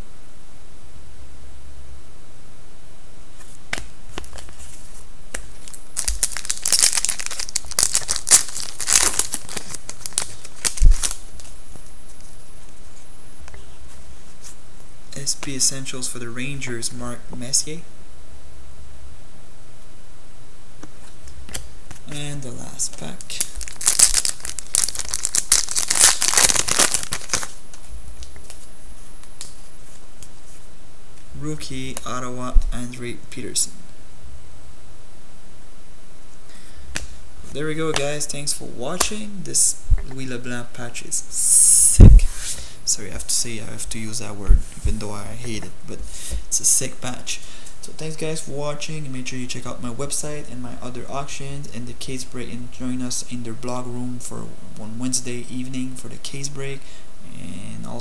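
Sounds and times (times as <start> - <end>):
card pack wrapper tearing: 5.6 - 11.5, 23.2 - 27.6.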